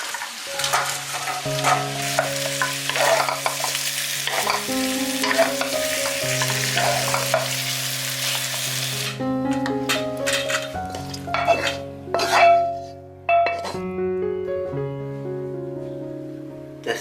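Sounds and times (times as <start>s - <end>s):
sizzling in a hot pan: 0.0s - 9.2s
spatula scraping and clacking: 9.9s - 12.8s.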